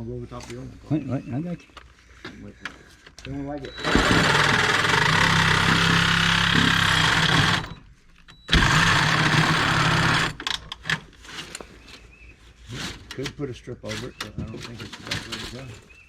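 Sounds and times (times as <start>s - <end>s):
reciprocating saw cutting metal: 3.8s - 7.8s, 8.5s - 10.4s.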